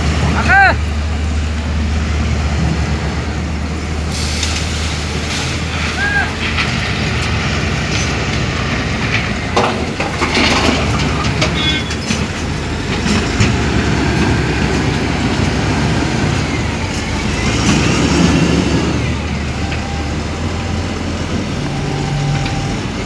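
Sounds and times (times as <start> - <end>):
heavy diesel machinery running: 0.0 - 23.0
metallic clanks and knocks: 9.1 - 14.3.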